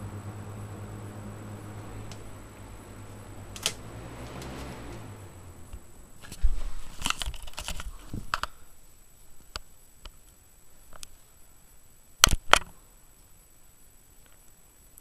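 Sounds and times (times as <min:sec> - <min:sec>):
loud sharp clicks: 0:03.5 - 0:05.0, 0:12.2 - 0:12.8.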